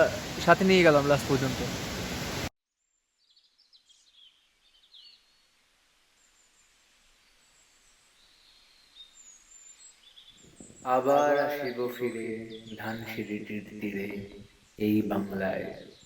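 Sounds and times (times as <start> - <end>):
bird chirps and whistled calls: 8.3 - 13.2.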